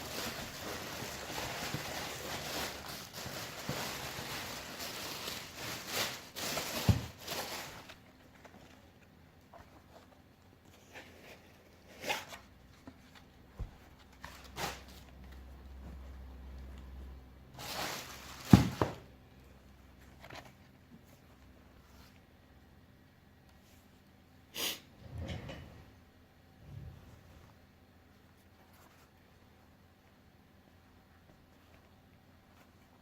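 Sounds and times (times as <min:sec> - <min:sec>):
paper packaging rustling: 0:00.0 - 0:13.3, 0:13.9 - 0:15.5, 0:17.6 - 0:19.0.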